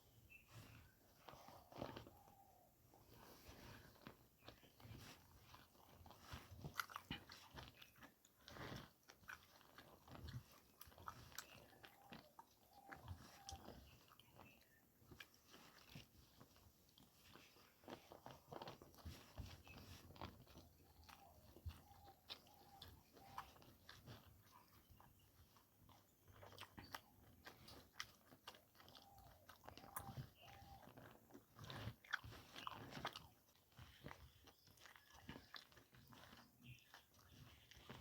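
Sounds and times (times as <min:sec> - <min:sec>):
person chewing with wet clicks: 0:00.3 - 0:38.0.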